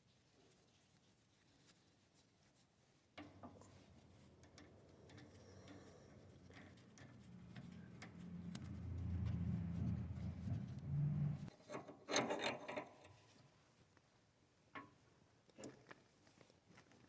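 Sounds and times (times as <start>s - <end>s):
scraping: 3.2s - 11.5s
low hum: 4.7s - 11.5s.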